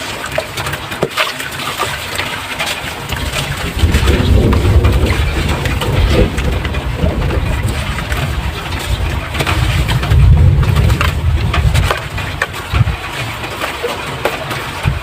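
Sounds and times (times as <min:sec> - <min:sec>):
crumbling crackles and pops: 0:03.0 - 0:15.0
low rumble: 0:03.0 - 0:15.0.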